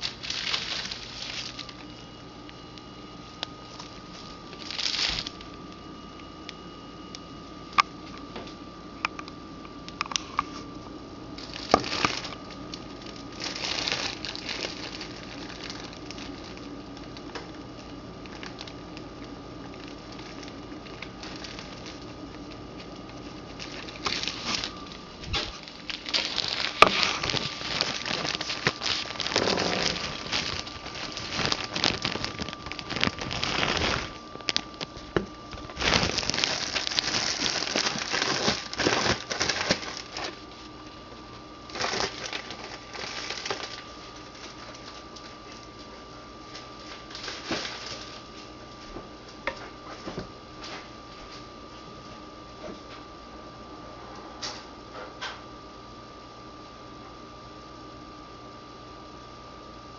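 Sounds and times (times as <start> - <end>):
food packaging crinkling: 0.0 - 7.2, 11.3 - 48.9.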